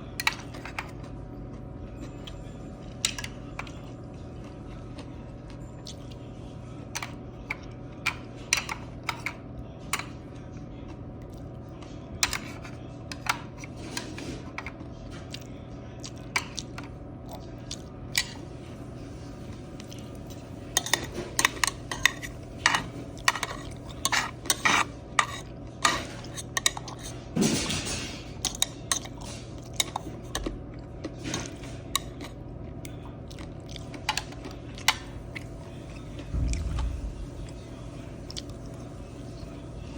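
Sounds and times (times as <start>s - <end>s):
low hum: 35.3s - 39.9s.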